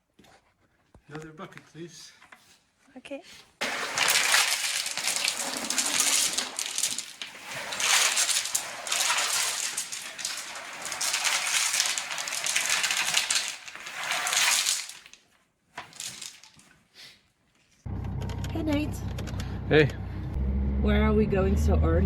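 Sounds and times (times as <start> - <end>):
gravel pouring from buckets: 3.6 - 15.2, 15.8 - 16.6.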